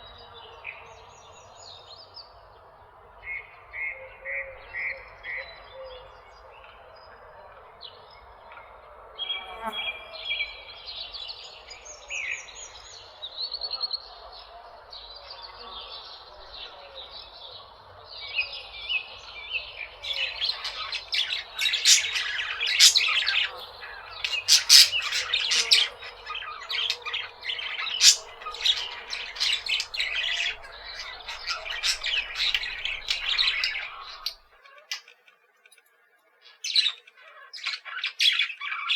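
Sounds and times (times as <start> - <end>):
birds chirping and squawking: 19.9 - 35.1.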